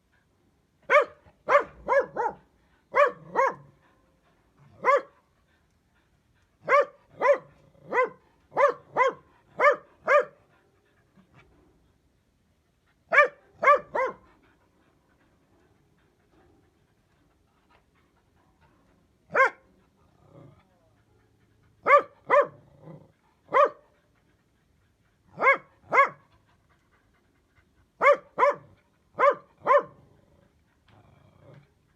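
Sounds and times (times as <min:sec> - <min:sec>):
dog barking: 0:00.9 - 0:03.7, 0:04.8 - 0:05.1, 0:06.7 - 0:10.4, 0:13.1 - 0:14.2, 0:19.3 - 0:19.6, 0:21.8 - 0:22.6, 0:23.5 - 0:23.8, 0:25.4 - 0:26.2, 0:28.0 - 0:30.0.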